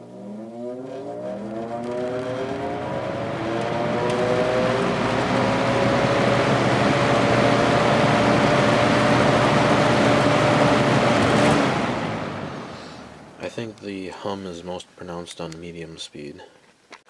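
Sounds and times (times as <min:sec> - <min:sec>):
box fan air rush: 0:00.0 - 0:13.4
fan motor hum: 0:00.0 - 0:13.9.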